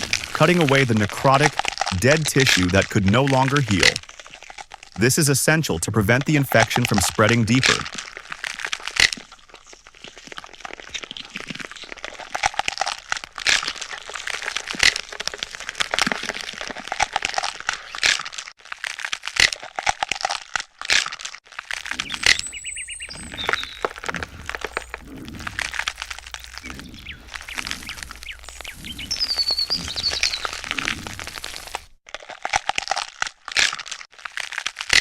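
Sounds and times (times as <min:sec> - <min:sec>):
blade crunching and scraping tissue: 0:00.0 - 0:03.1, 0:07.9 - 0:35.0.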